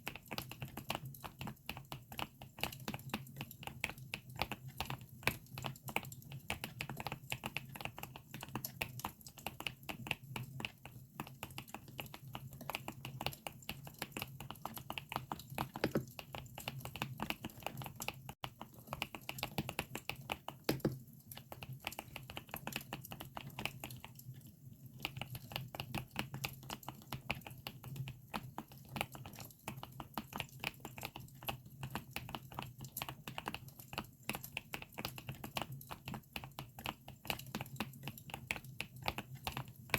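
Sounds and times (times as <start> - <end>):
mechanical keyboard typing: 15.7 - 16.3, 19.4 - 21.1.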